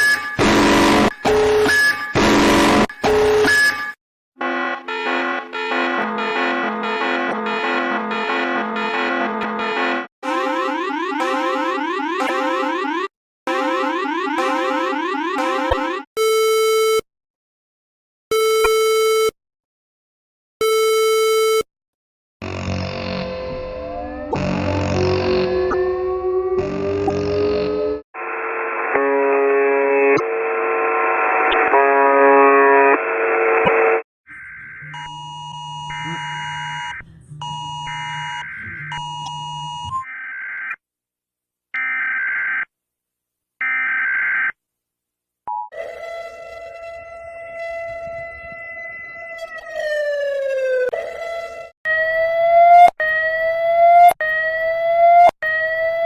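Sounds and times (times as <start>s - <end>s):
alternating electronic alert tones: 4.4s - 16.4s, 34.3s - 40.7s.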